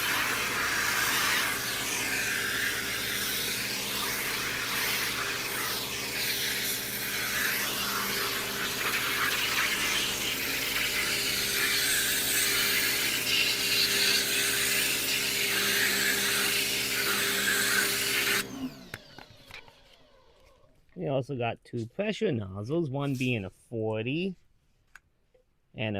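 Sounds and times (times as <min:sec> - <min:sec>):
pressure washer water hiss: 0:00.0 - 0:13.8
motor and pump hum: 0:00.0 - 0:20.4.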